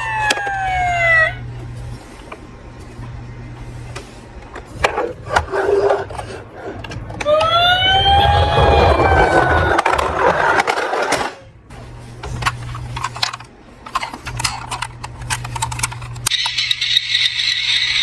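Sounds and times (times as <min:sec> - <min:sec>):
toy siren: 0:00.0 - 0:01.4, 0:07.2 - 0:10.3, 0:16.3 - 0:18.0
low steady hum: 0:00.0 - 0:16.5.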